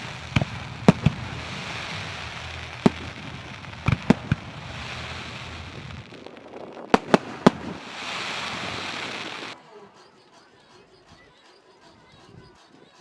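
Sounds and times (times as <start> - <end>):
fireworks exploding: 0.0 - 9.6.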